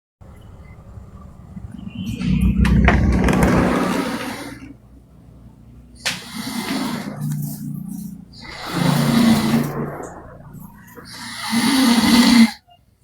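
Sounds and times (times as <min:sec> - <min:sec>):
man snoring loudly: 0:06.0 - 0:12.6.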